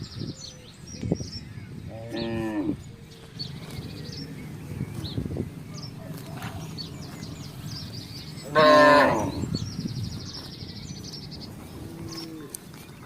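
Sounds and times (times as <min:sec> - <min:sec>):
cow mooing: 0:08.4 - 0:09.5, 0:11.8 - 0:12.6.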